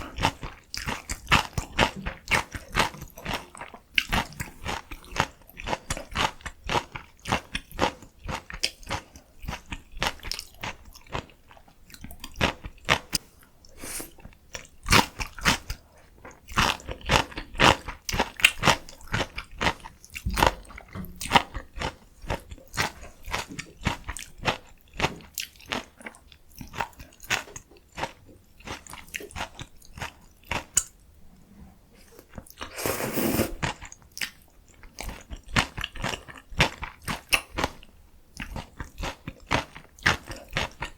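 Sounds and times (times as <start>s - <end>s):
person chewing crunchy food: 0.0s - 31.0s, 32.0s - 40.9s
loud mouth noise: 32.7s - 33.6s.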